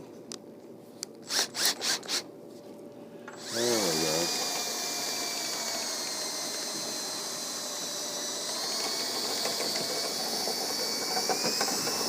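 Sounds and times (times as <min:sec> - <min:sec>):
electric drill whine: 0:01.3 - 0:02.2, 0:03.3 - 0:12.0
rotary brush rushing hiss: 0:03.4 - 0:12.0.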